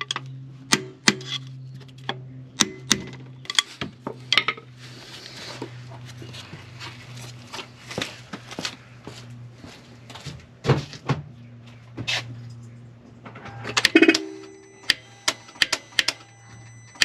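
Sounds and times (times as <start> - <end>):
steady low hum: 0.0 - 17.0
metal tapping on starter motor: 2.1 - 3.7.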